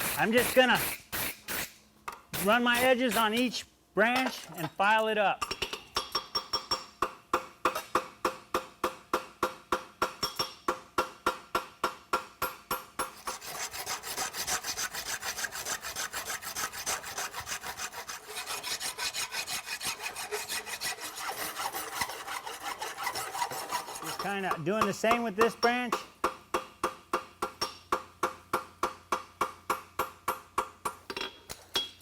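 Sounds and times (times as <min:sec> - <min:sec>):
file rasping on steel: 0:00.0 - 0:01.7, 0:02.4 - 0:03.6, 0:13.0 - 0:25.5.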